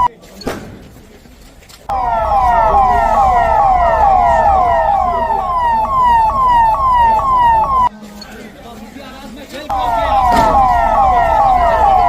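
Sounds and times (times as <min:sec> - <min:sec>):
emergency vehicle sirens wailing: 0:01.9 - 0:07.9, 0:09.7 - 0:12.0.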